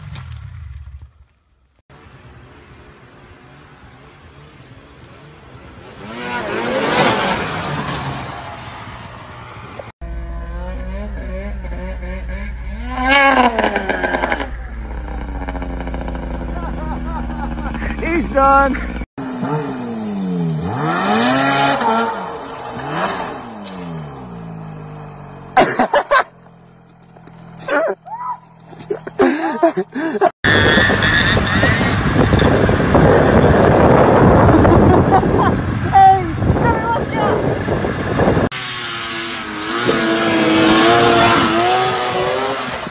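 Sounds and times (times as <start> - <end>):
snowmobile engine revving: 5.7 - 8.7, 10.0 - 26.3, 28.8 - 42.9.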